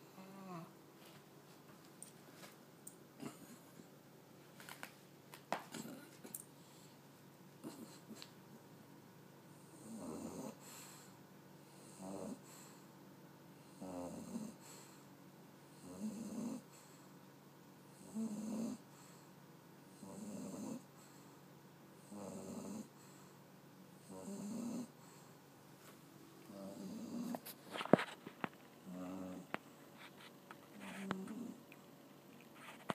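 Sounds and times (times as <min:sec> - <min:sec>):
puppy snoring: 0:00.0 - 0:00.8, 0:03.2 - 0:03.9, 0:05.7 - 0:06.4, 0:07.6 - 0:08.3, 0:09.5 - 0:12.9, 0:13.6 - 0:15.1, 0:15.7 - 0:17.1, 0:17.9 - 0:19.2, 0:19.9 - 0:21.3, 0:22.0 - 0:23.4, 0:24.0 - 0:25.3, 0:26.4 - 0:28.2, 0:28.8 - 0:31.8.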